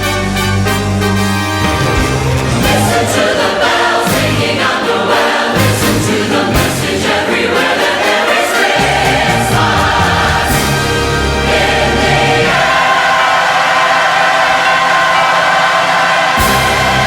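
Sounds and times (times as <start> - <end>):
choir singing with orchestra: 0.0 - 17.0.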